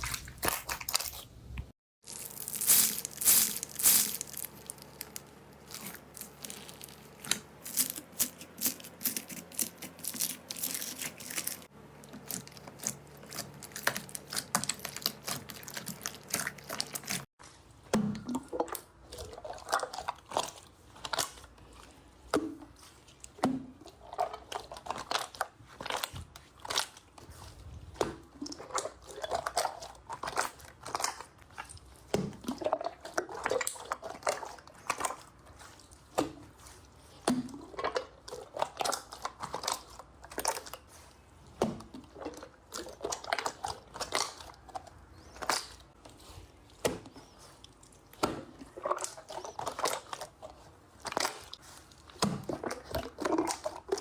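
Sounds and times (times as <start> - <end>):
slime popping and crackling: 0.0 - 1.4, 2.0 - 17.3
wet slime squelches: 0.0 - 54.0.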